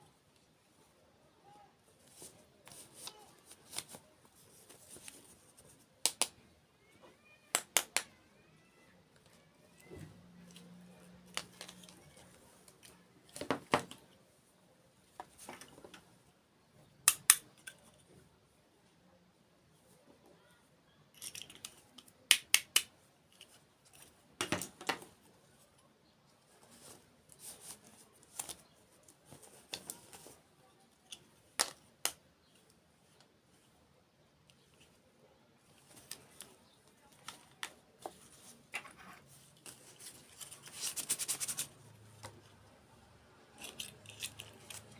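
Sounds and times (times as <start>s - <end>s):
crisp eating crunches and clicks: 43.6s - 44.9s.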